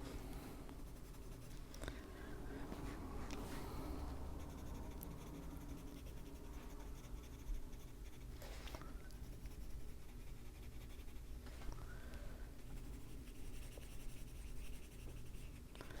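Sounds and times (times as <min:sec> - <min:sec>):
low steady hum: 0:00.0 - 0:16.0
pencil scratching on paper: 0:00.8 - 0:01.6, 0:03.6 - 0:11.4, 0:12.6 - 0:15.7.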